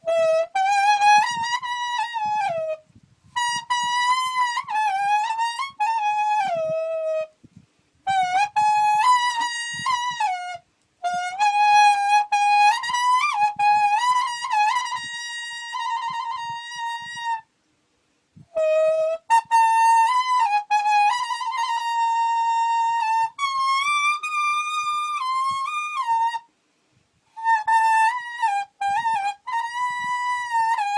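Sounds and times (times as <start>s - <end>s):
leaf whistling melody: 0.0s - 17.6s, 18.4s - 26.6s, 27.2s - 30.9s.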